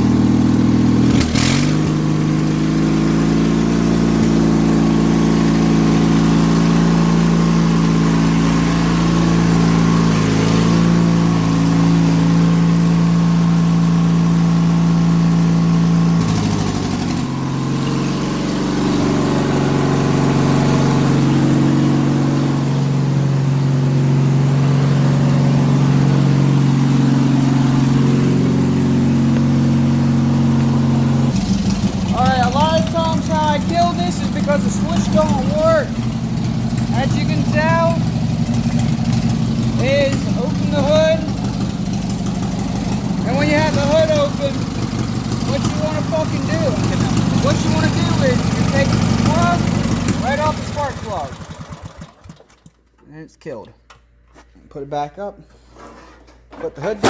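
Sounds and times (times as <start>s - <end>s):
riding mower engine running: 0.0s - 53.0s.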